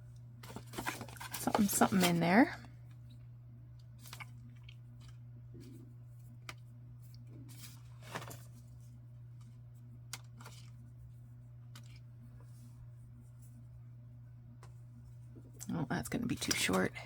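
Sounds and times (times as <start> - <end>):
steady low hum: 0.0 - 17.0
paper rustling: 0.4 - 2.2, 7.4 - 9.5.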